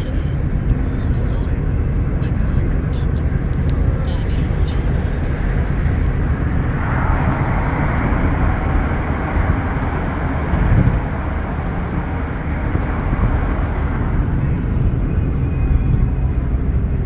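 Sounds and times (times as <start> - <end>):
car engine and road rumble: 0.0 - 17.0.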